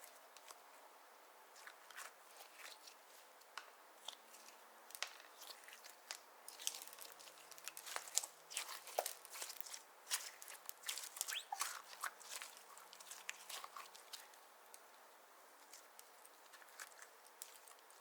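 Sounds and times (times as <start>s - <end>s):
slime squished by hand: 4.0s - 14.4s.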